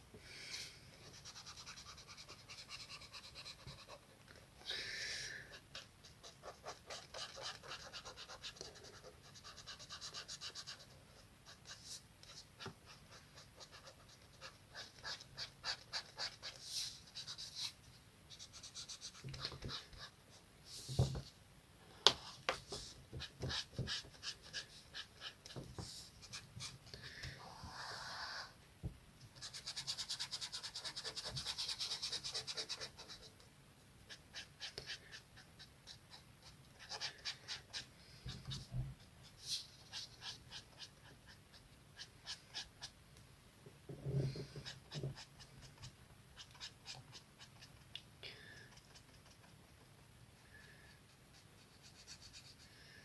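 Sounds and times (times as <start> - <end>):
colouring strokes on paper: 5.5 - 21.1, 50.9 - 52.8.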